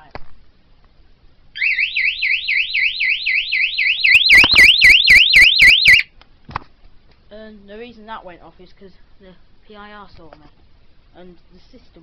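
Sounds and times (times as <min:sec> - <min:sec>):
sharp loud alarm pulses: 0:01.6 - 0:06.1
warbling alarm siren: 0:01.6 - 0:06.1.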